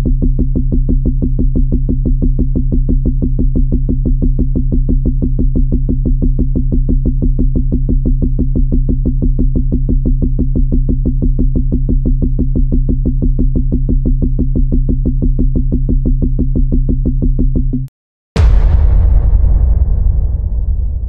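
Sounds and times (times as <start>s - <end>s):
explosion-like blast: 18.4s - 21.0s.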